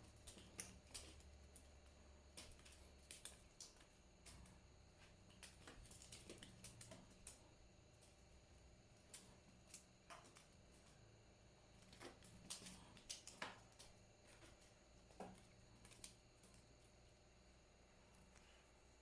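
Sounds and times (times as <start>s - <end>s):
faint clicks and taps: 0.0s - 8.3s
low room hum: 0.0s - 19.0s.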